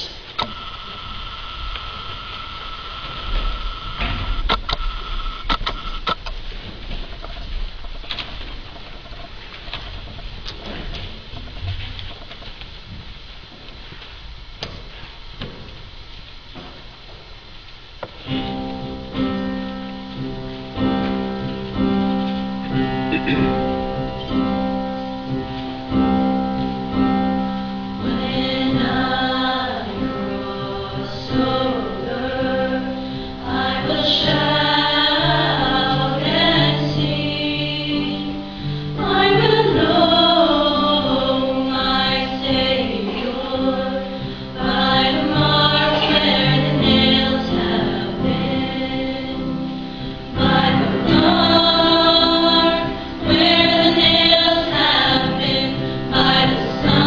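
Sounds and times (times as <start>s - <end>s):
choir singing a hymn: 18.4s - 57.0s.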